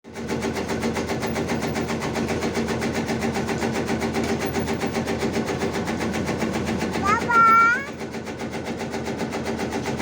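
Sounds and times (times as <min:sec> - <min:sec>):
chopping machine running: 0:00.0 - 0:10.0.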